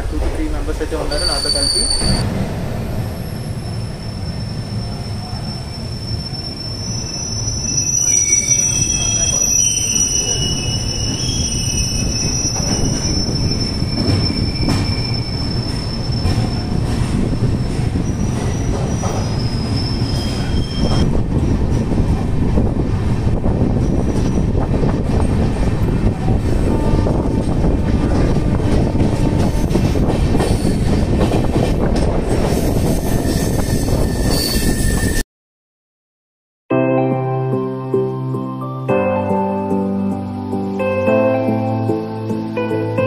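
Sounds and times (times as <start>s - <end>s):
train coach rumbling on rails: 0.0s - 35.2s
high-pitched wheel squeals: 1.1s - 2.2s, 3.6s - 16.8s, 18.0s - 21.0s, 32.6s - 35.2s.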